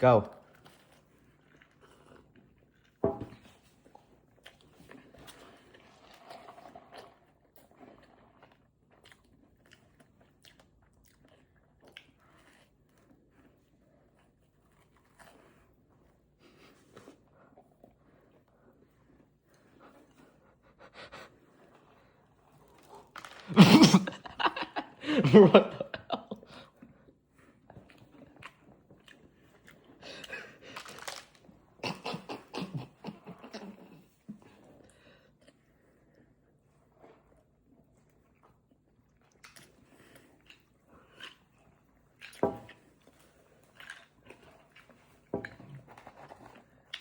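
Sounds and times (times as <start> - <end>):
biscuit chewing: 0.3 - 25.0, 25.8 - 47.0.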